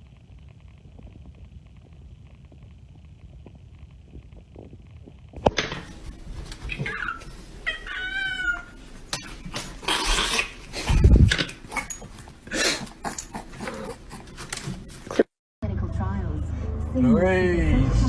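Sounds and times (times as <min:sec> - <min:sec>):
cat meowing: 0:06.7 - 0:08.8.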